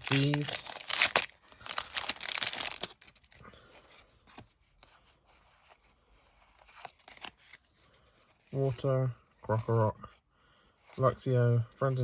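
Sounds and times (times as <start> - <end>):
foil wrapper tearing and crinkling: 0.0 - 3.2.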